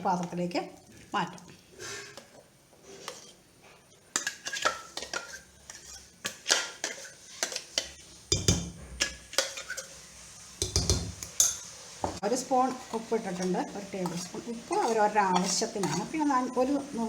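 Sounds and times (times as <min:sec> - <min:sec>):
spoon clinking and scraping: 0:04.1 - 0:10.0, 0:10.6 - 0:11.7, 0:12.7 - 0:16.8.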